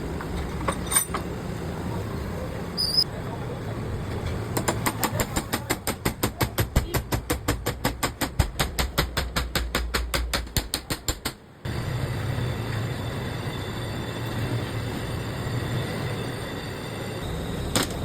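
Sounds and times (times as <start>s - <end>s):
rapid even knocking: 4.6s - 11.4s.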